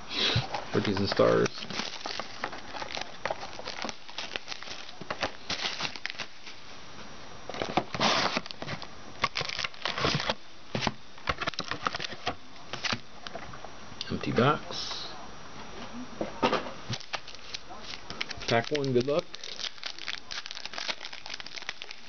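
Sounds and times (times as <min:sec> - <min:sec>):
plastic and foil packs crinkling: 0:00.3 - 0:06.6, 0:07.5 - 0:13.0, 0:16.9 - 0:22.0.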